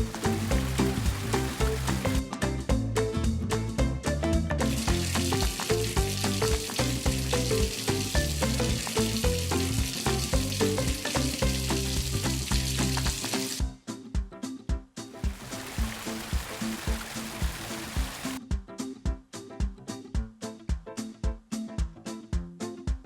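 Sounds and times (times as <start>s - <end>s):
water running: 0.0s - 2.2s, 4.6s - 13.6s, 15.2s - 18.4s
background music: 0.0s - 22.8s.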